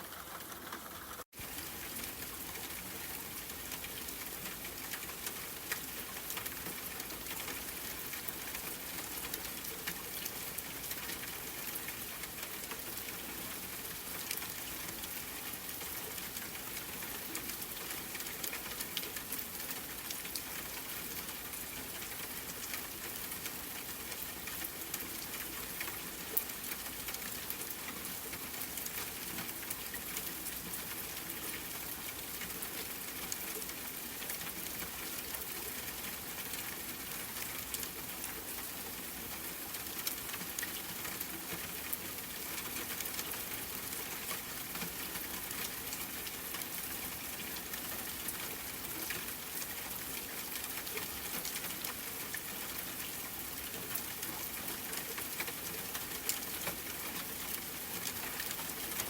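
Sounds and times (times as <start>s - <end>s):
rain pattering: 0.0s - 59.0s.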